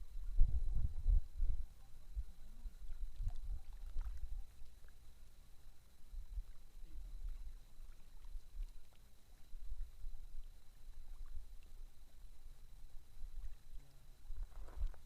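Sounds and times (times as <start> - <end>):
wind buffeting microphone: 0.0 - 4.4.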